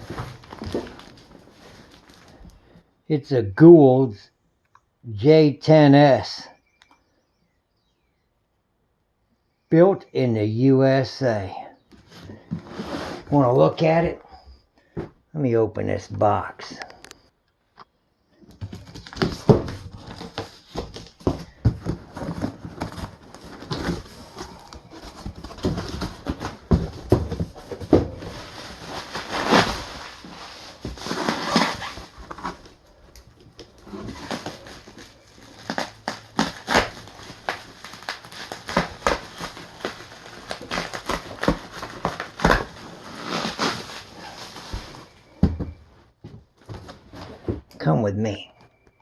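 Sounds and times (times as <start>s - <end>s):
cardboard rustling and ripping: 0.0s - 2.4s, 18.5s - 45.8s
cardboard tearing: 18.6s - 32.8s, 33.6s - 45.2s.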